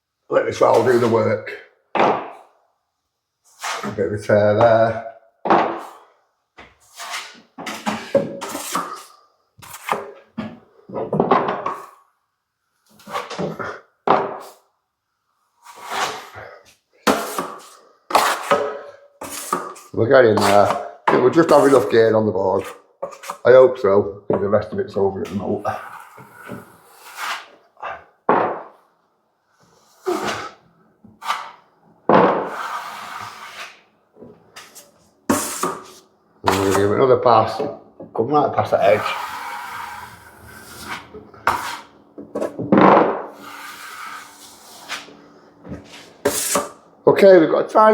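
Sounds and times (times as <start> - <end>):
trowel scraping filler: 0.7 - 1.3, 3.5 - 4.0, 6.8 - 10.2, 13.0 - 13.7, 15.6 - 16.5, 17.1 - 23.4, 25.7 - 28.0, 29.8 - 30.6, 31.2 - 31.7, 32.3 - 33.8, 34.6 - 37.0, 38.7 - 42.6, 43.3 - 46.8.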